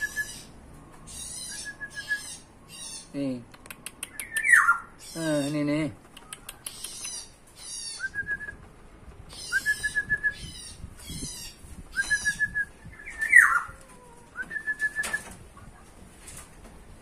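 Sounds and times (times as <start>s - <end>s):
bird singing: 0.0s - 3.2s, 4.1s - 8.6s, 9.3s - 13.8s
harsh bird call: 13.0s - 13.8s.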